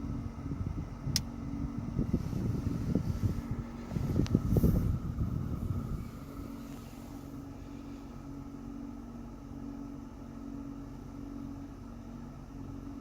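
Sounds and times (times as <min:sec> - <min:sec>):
low rumble: 0:00.0 - 0:08.3
air conditioning hum: 0:00.0 - 0:13.0.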